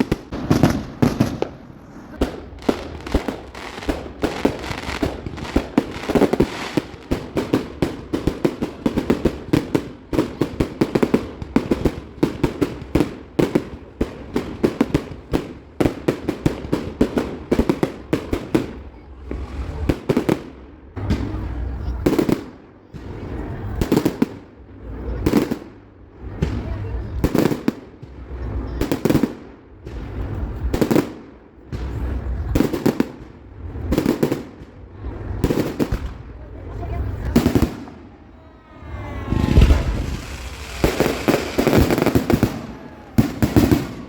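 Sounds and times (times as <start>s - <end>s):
fireworks bangs and crackling: 0.0s - 44.0s.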